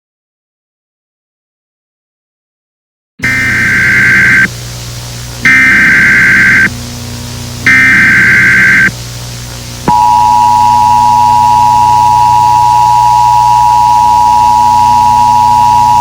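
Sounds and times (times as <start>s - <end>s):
two-tone attention signal: 3.2s - 4.5s, 5.5s - 6.7s, 7.7s - 8.9s, 9.9s - 16.0s
buzzy digital header burst: 3.2s - 10.5s
low hum: 3.2s - 16.0s.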